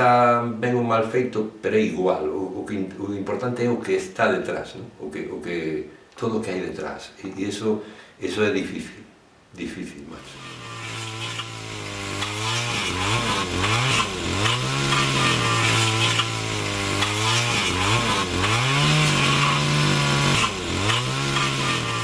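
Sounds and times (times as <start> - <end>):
chainsaw cutting wood: 10.2 - 22.0.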